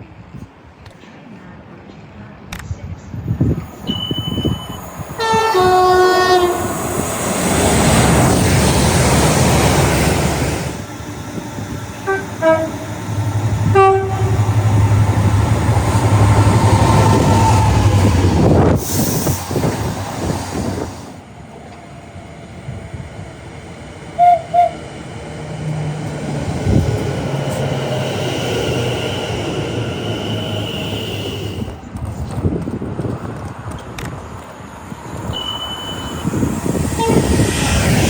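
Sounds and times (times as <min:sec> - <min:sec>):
train passing wheel and rail noise: 0:00.0 - 0:38.0
train horn blasts: 0:05.2 - 0:06.7, 0:12.0 - 0:13.0, 0:13.6 - 0:14.6, 0:24.2 - 0:24.8, 0:35.3 - 0:37.4.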